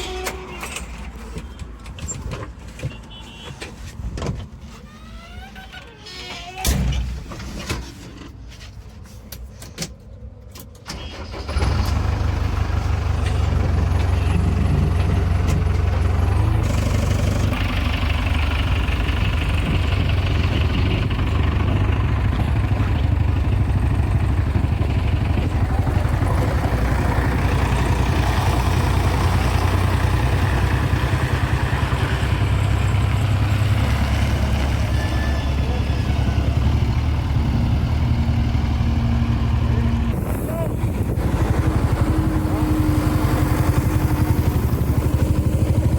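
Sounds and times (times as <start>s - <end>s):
diesel engine running: 10.9s - 45.9s.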